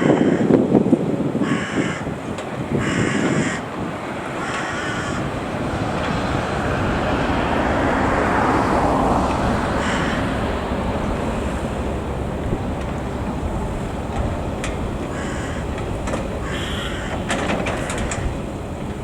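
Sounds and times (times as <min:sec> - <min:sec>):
crow cawing: 0:00.0 - 0:00.6, 0:01.4 - 0:02.1, 0:02.7 - 0:03.7, 0:04.3 - 0:05.7, 0:08.4 - 0:10.6, 0:15.0 - 0:18.3
mechanical rumble: 0:03.7 - 0:19.0.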